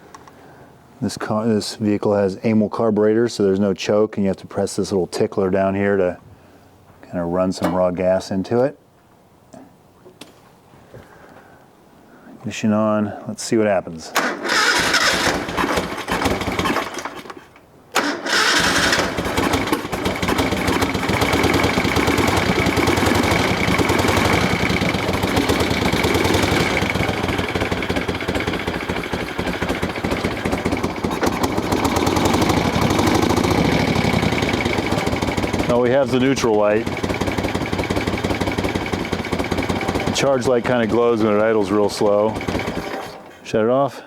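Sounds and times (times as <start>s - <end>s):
motorcycle starter cranking: 14.1s - 43.4s
motorcycle engine idling: 18.3s - 43.0s.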